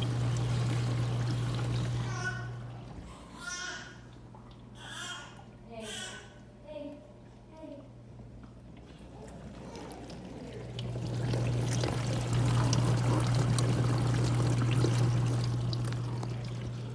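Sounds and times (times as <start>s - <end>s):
water rushing in dishwasher: 0.0s - 3.8s, 8.7s - 16.9s
dishwasher buzzing: 0.0s - 6.3s, 8.7s - 16.9s.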